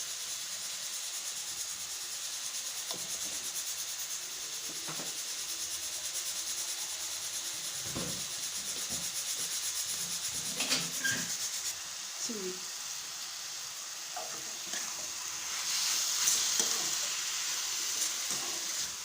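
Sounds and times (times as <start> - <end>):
food sizzling in a pan: 0.0 - 19.0
spatula scraping a pan: 7.9 - 11.8, 14.2 - 19.0.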